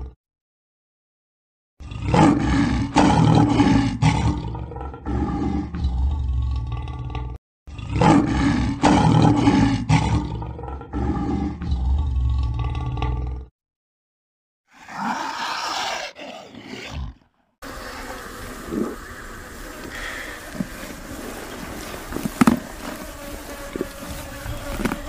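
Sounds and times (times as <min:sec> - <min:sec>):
big cat roaring and growling: 0:01.8 - 0:13.5, 0:14.7 - 0:22.9.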